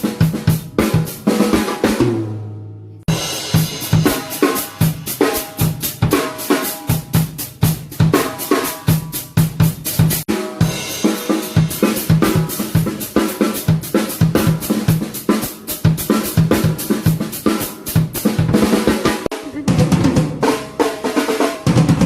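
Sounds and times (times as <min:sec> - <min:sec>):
cymbals: 0:03.1 - 0:18.1
bass drum: 0:03.1 - 0:20.8
snare drum: 0:03.3 - 0:22.0.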